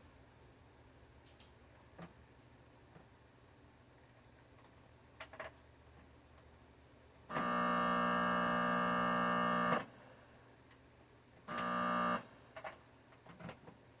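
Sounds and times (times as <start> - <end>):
harsh buzz through speaker: 7.3 - 9.9, 11.5 - 12.3.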